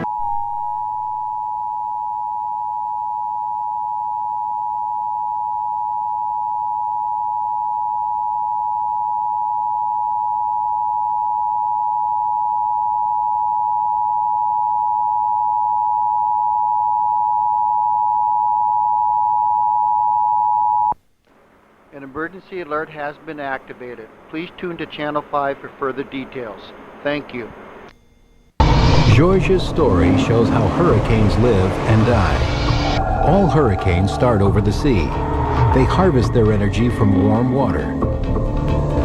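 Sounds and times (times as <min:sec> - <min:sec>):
two-tone alert signal: 0:00.0 - 0:02.3.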